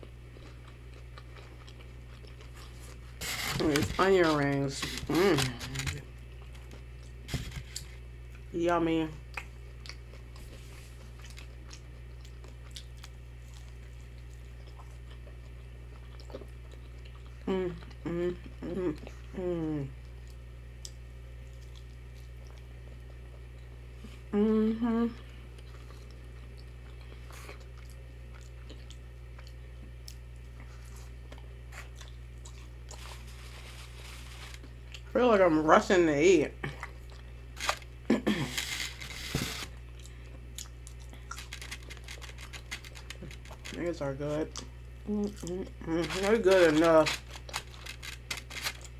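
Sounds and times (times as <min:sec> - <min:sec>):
person chewing wetly: 0:00.0 - 0:03.5, 0:09.3 - 0:18.1, 0:20.0 - 0:23.7, 0:25.5 - 0:35.1, 0:39.8 - 0:48.9
steady low hum: 0:00.0 - 0:48.9
crisp crunches: 0:02.4 - 0:06.1, 0:07.3 - 0:08.0, 0:32.6 - 0:34.8, 0:37.6 - 0:39.8, 0:40.8 - 0:44.0, 0:45.9 - 0:48.9.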